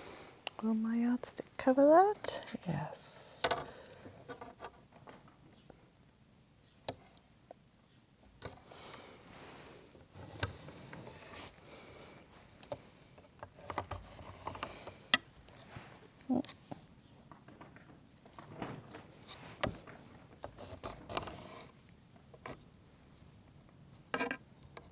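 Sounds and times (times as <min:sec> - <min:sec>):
fabric rustling and scraping: 0:09.1 - 0:11.6, 0:15.5 - 0:17.0, 0:17.6 - 0:22.6.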